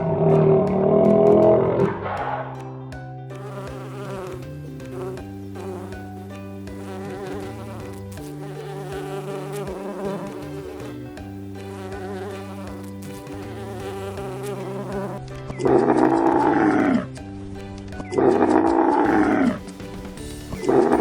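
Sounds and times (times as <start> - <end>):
flying insect buzzing: 3.3 - 17.1, 18.1 - 19.6, 20.4 - 21.0.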